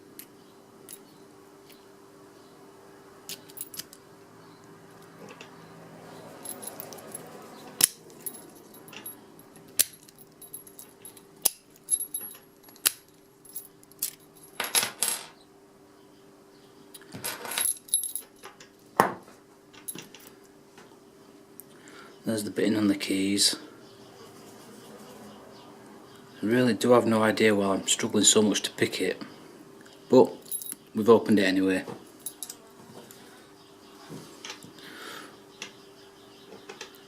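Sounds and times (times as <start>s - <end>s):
keys jingling: 3.3s - 3.9s, 6.4s - 15.0s, 30.4s - 30.8s, 32.2s - 32.6s
padlock rattling: 3.3s - 4.0s, 6.4s - 14.6s.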